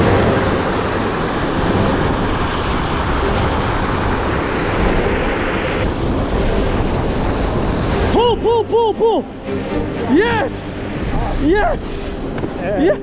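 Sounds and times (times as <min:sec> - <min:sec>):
river water rushing: 0:00.0 - 0:08.2
wind buffeting microphone: 0:00.0 - 0:13.0.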